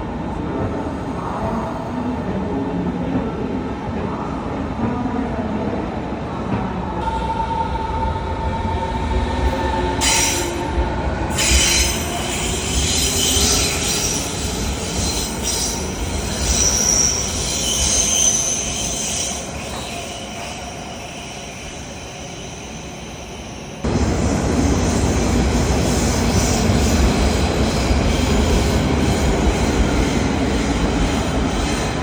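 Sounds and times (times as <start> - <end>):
electric train rumbling: 0.0 - 32.0
train wheels squealing: 8.8 - 10.7, 11.3 - 23.8.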